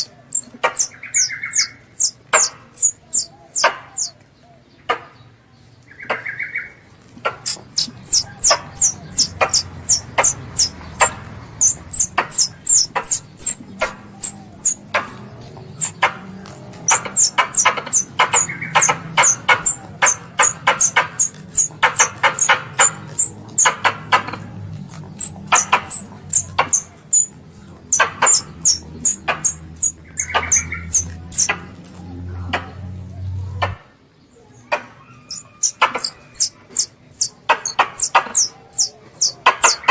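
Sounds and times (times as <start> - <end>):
squirrel call chips and whistles: 0.0 - 4.2, 7.4 - 16.1, 16.9 - 23.8, 25.2 - 31.6, 35.1 - 39.9.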